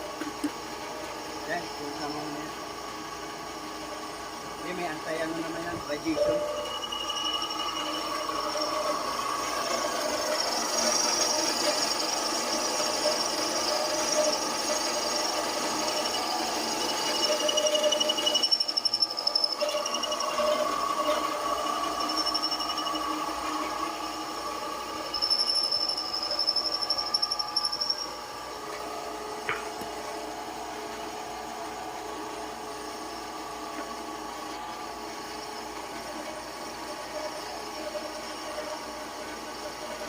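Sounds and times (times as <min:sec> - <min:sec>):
workshop machine humming: 0:00.0 - 0:40.0
high-pitched whine: 0:04.6 - 0:28.7.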